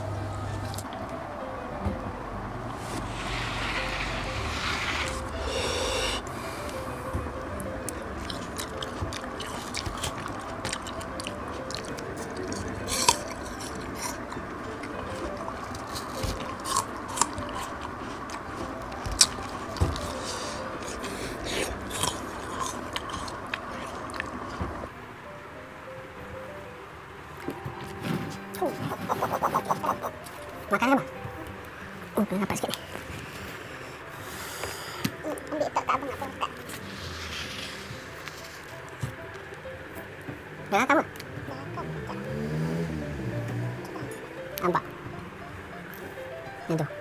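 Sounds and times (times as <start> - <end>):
faint background music: 0.0 - 47.0
person chewing: 7.9 - 24.6.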